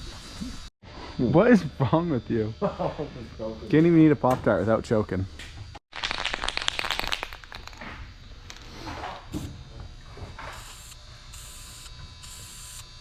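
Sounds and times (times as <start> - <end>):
spray can ball rattling: 6.0 - 7.8.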